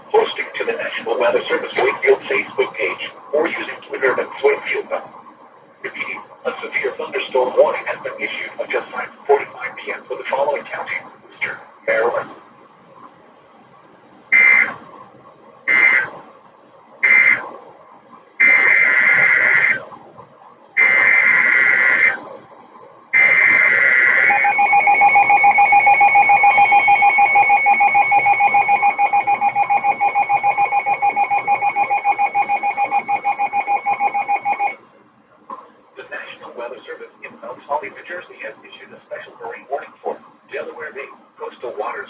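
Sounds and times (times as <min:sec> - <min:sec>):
data bursts: 0:23.2 - 0:34.8
fluttering alarm tone: 0:23.2 - 0:34.8.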